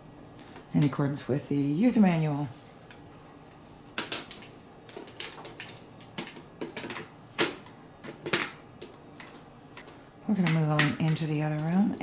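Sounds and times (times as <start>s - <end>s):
plastic parts clicking and knocking: 4.0s - 11.8s.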